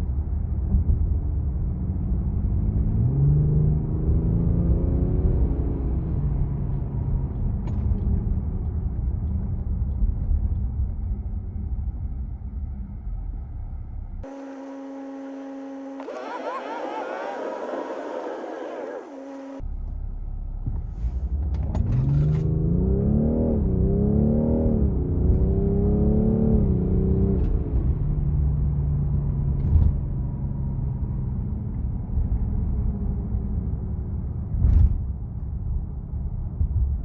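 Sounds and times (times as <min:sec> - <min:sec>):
car accelerating: 0:14.2 - 0:19.6, 0:21.8 - 0:29.4.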